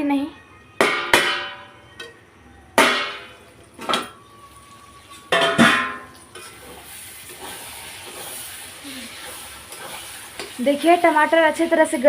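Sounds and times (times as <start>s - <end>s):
metal lid clanging on pan: 5.3s - 6.1s
sauce sizzling in pan: 6.0s - 12.0s.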